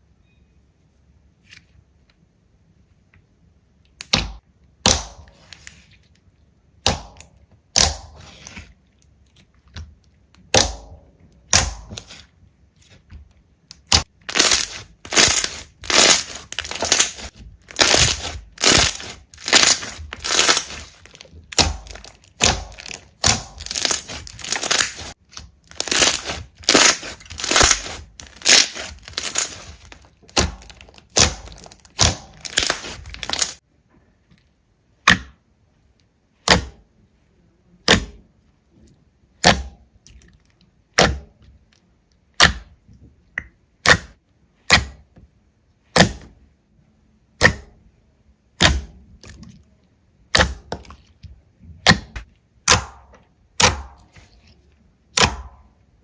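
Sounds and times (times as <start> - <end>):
slime crackling pops: 13.8 - 25.1, 25.7 - 33.6.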